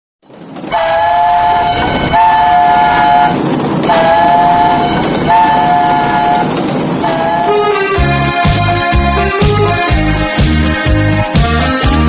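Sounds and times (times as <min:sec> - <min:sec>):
moving train rumbling: 0:00.2 - 0:12.0
train horn blasts: 0:00.7 - 0:08.8.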